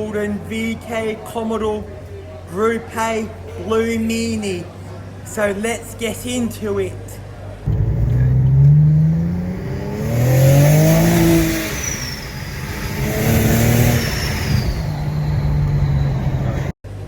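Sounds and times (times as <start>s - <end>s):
car engine revving: 7.7s - 16.7s.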